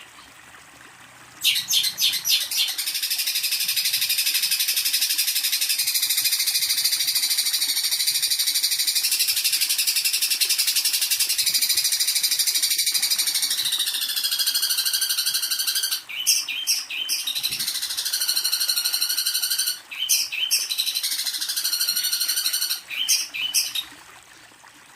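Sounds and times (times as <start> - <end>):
songbird high-pitched trilling: 1.4 - 8.8, 13.4 - 23.8.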